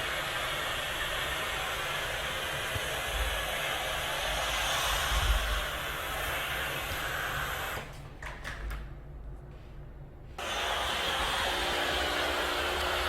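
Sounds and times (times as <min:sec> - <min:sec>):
steam cleaner hissing: 0:00.0 - 0:07.8, 0:10.4 - 0:13.0.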